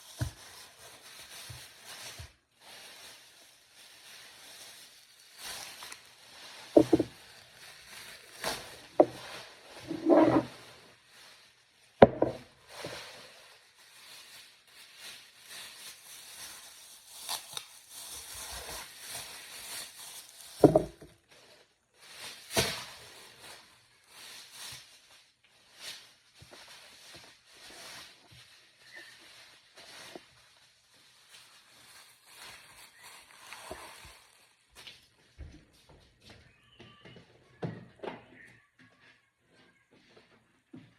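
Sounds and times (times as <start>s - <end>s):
packaging rustling: 0.0s - 11.1s, 13.3s - 21.3s, 25.9s - 35.1s
items knocking on hard surface: 6.7s - 7.2s, 8.9s - 10.5s, 12.0s - 12.5s, 20.6s - 21.1s.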